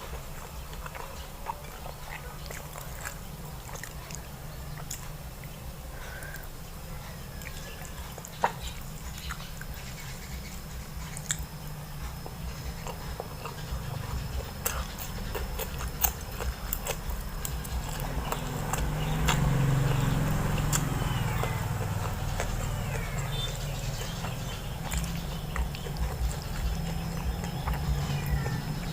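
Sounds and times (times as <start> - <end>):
chewing and biting fat: 0.0 - 5.6, 7.3 - 28.9
steady low hum: 0.0 - 28.9
wet mouth clicks and smacks: 24.2 - 27.8.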